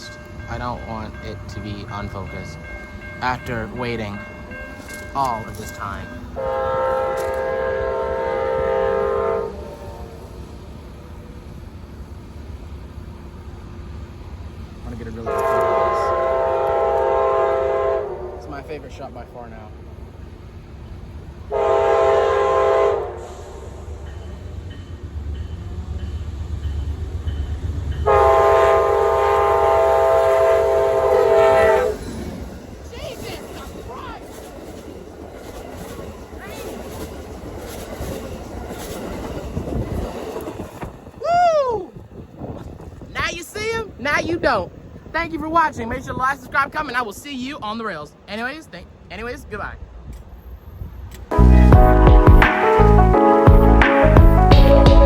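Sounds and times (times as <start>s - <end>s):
diesel locomotive rumbling: 0.0s - 55.0s
locomotive horn chord: 6.3s - 10.4s, 15.2s - 18.7s, 21.5s - 23.6s, 28.0s - 32.0s.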